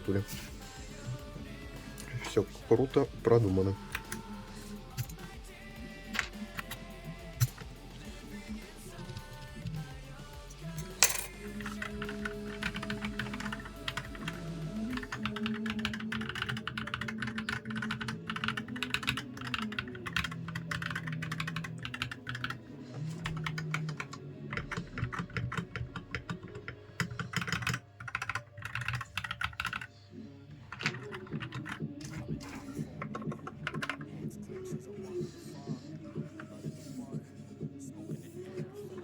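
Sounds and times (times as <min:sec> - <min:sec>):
typing on mechanical keyboard: 0:15.0 - 0:22.6, 0:23.2 - 0:29.9, 0:30.7 - 0:34.1.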